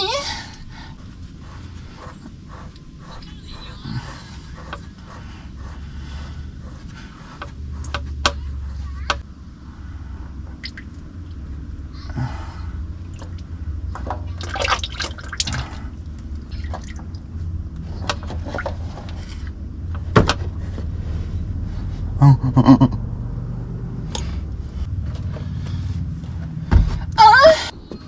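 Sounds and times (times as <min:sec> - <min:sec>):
liquid pouring and dripping: 0:14.3 - 0:15.8.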